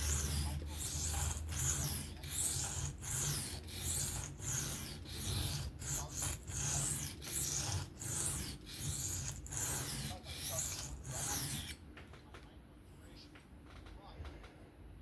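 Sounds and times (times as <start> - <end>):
knife scraping on sharpening plate: 0.0 - 11.8.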